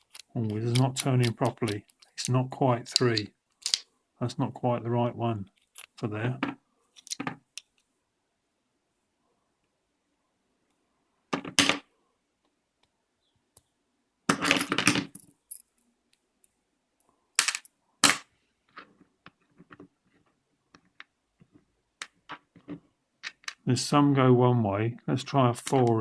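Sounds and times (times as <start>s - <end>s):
small metal lock parts clicking: 0.0s - 3.8s, 5.6s - 6.0s, 7.0s - 7.8s.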